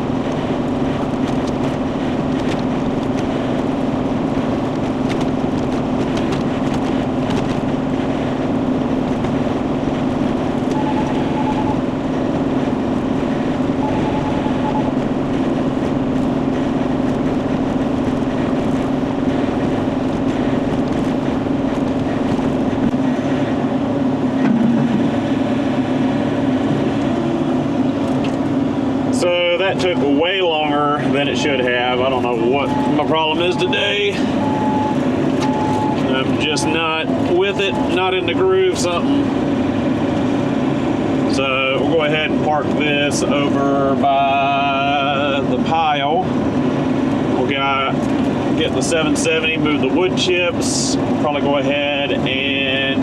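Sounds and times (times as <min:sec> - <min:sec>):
excavator diesel engine running: 0:00.0 - 0:53.0
faint beeping: 0:10.7 - 0:11.8, 0:13.8 - 0:14.9, 0:32.2 - 0:38.3.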